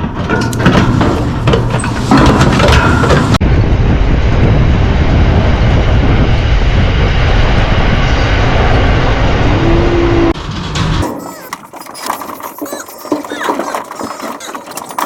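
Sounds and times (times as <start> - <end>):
vehicle roaring: 0.0 - 11.2.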